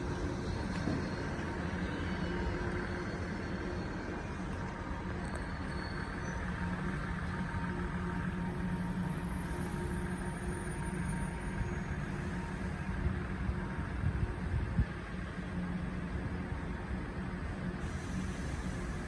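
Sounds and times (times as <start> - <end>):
faint steady tone: 0.0 - 19.0
vehicle idling hum: 0.0 - 19.0.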